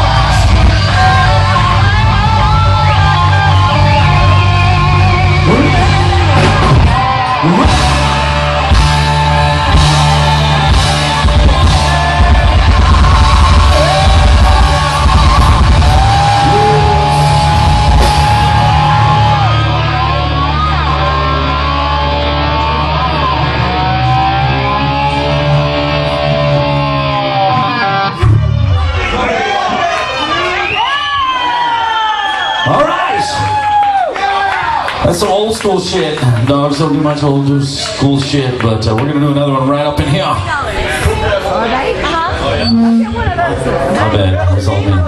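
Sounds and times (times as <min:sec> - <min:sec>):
live hard rock band: 0:00.0 - 0:29.1
guitar line bending in pitch: 0:42.5 - 0:44.6.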